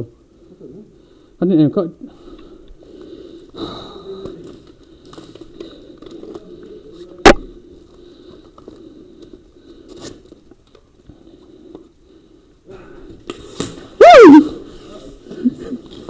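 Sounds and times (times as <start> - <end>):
muffled voices: 3.6 - 8.5.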